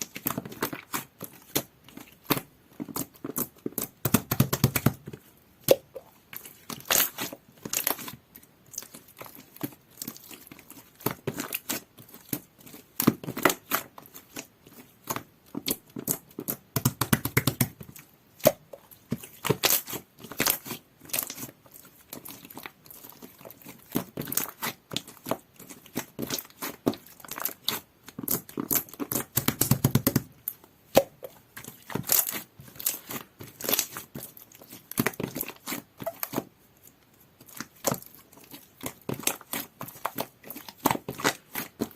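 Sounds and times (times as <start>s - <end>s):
slime squelching: 0.0s - 41.9s
slime clicking and popping: 26.1s - 30.3s, 30.9s - 31.3s.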